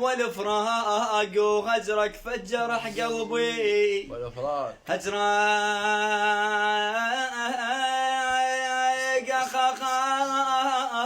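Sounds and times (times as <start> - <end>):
man singing unaccompanied: 0.0 - 11.0.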